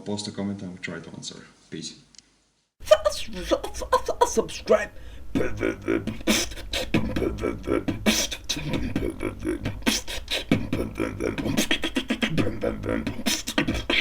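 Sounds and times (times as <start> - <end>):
person beatboxing: 5.3 - 14.0.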